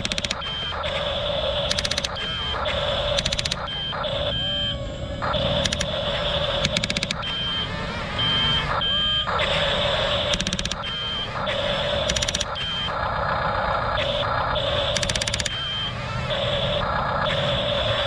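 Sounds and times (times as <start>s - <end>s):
rapid rattling clicks: 0.0s - 0.5s, 1.6s - 2.3s, 3.0s - 3.8s, 5.4s - 7.3s, 10.2s - 10.9s, 12.0s - 12.6s, 14.9s - 15.6s
steady mechanical drone: 0.0s - 18.0s.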